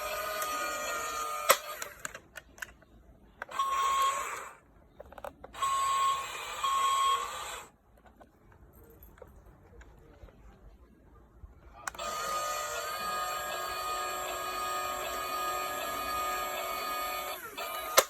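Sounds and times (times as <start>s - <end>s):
toy gear motors whirring: 0.0s - 2.2s, 3.4s - 4.6s, 5.5s - 7.7s, 11.9s - 18.0s.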